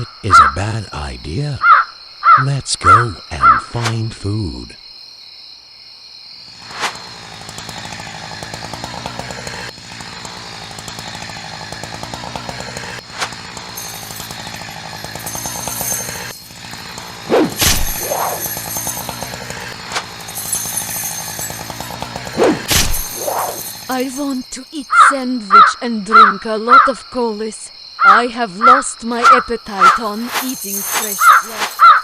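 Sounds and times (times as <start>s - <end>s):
chainsaw buzzing: 6.5s - 25.1s, 29.2s - 32.0s
sharp hits: 17.2s - 23.9s.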